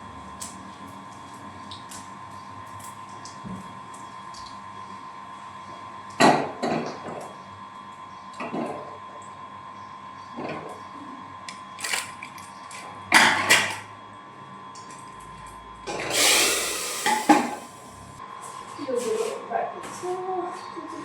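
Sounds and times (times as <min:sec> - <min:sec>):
steady hum: 0:16.1 - 0:18.2.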